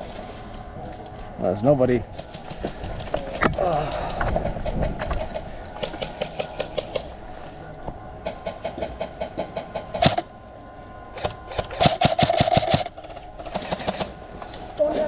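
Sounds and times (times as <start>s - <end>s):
airsoft guns firing in bursts: 11.2s - 14.1s.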